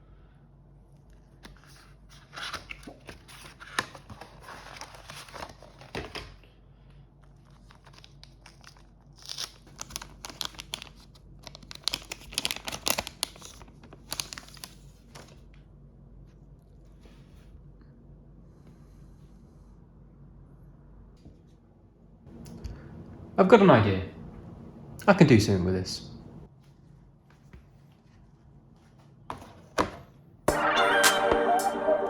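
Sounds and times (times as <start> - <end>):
crinkly wrapping being crumpled: 7.2 - 15.4.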